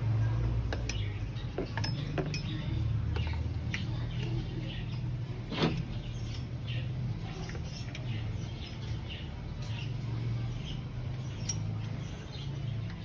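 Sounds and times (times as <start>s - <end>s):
small metal clinks: 0.7s - 3.9s, 11.3s - 12.0s.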